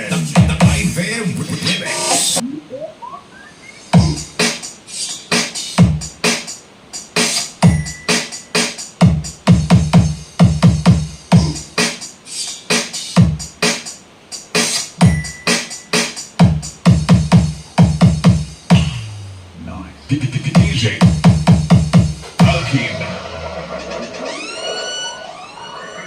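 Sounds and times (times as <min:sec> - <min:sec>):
electronic dance music: 0:00.0 - 0:13.9, 0:20.1 - 0:26.0.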